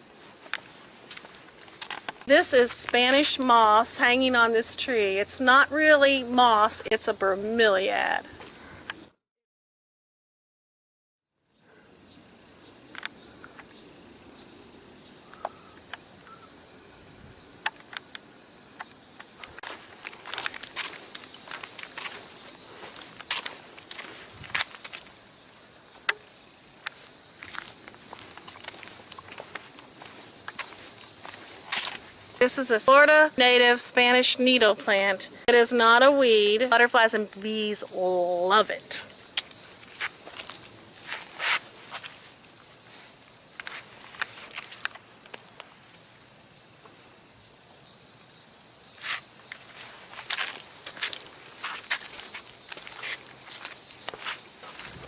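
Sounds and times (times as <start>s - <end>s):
footsteps on a trail: 0.0s - 4.5s, 19.2s - 32.7s, 39.2s - 45.5s, 49.0s - 55.0s
crickets chirping: 0.0s - 9.2s, 11.4s - 55.0s
high-pitched insect chorus: 11.5s - 55.0s.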